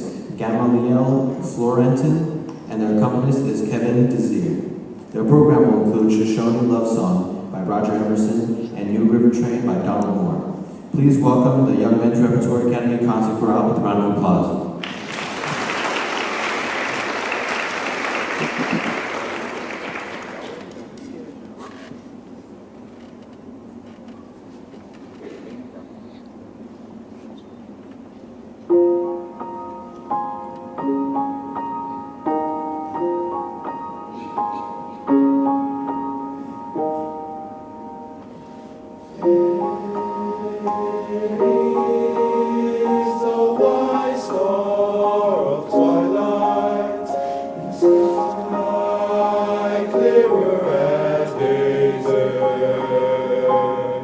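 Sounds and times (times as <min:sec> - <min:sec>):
piano chords: 0:00.0 - 0:20.6, 0:28.4 - 0:54.0
men's chorus singing: 0:39.2 - 0:54.0.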